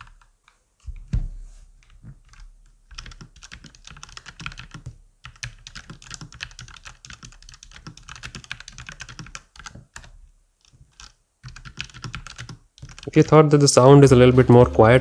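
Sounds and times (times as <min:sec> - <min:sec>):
fast mechanical keyboard typing: 0:00.0 - 0:00.3, 0:01.8 - 0:13.4.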